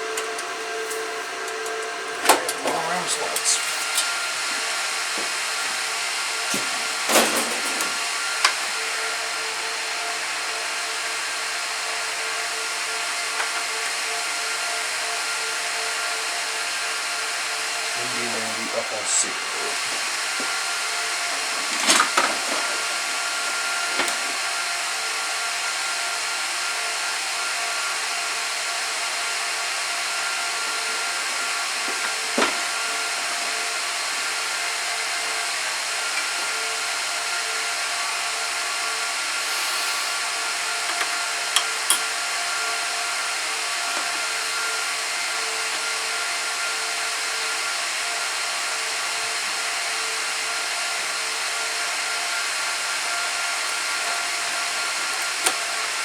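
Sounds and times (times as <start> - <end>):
server cooling fans whining: 0.0 - 11.4, 17.5 - 24.9, 39.1 - 44.8.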